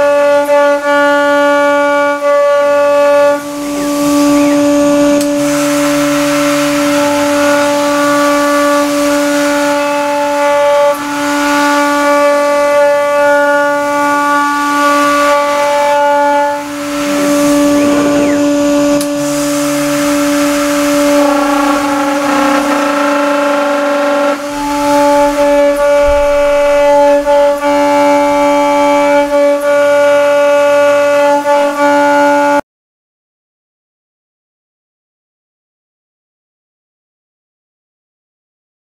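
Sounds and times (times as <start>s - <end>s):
milling machine high whine: 2.6s - 32.6s.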